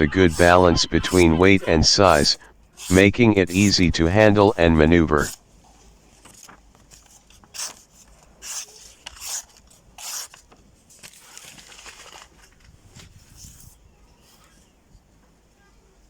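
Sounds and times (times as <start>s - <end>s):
soft rubbing: 0.2s - 4.5s
folding knife scraping: 0.2s - 4.6s, 7.5s - 10.4s.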